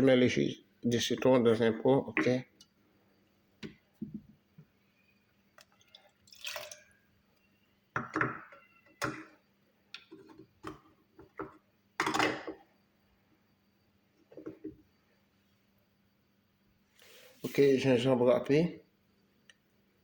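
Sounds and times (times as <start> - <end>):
juice pouring into a jar: 5.6 - 7.0.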